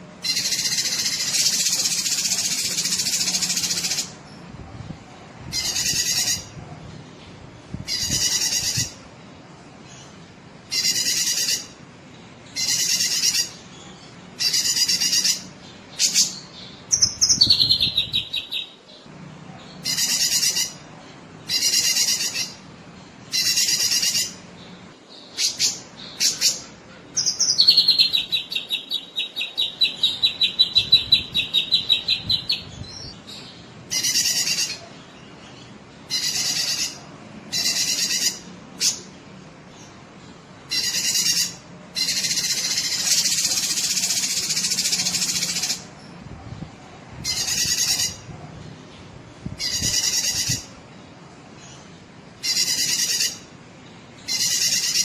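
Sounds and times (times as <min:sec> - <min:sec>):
bird fast trill: 0:00.2 - 0:04.2, 0:12.6 - 0:13.6, 0:25.4 - 0:33.1, 0:40.7 - 0:45.8, 0:54.2 - 0:55.0
bird harsh buzzy calls: 0:00.2 - 0:04.2, 0:07.8 - 0:09.0, 0:10.7 - 0:11.8, 0:12.5 - 0:13.7, 0:23.3 - 0:24.5, 0:33.8 - 0:34.9, 0:36.0 - 0:39.1, 0:40.7 - 0:45.9, 0:49.5 - 0:50.8, 0:52.4 - 0:53.6, 0:54.2 - 0:55.0.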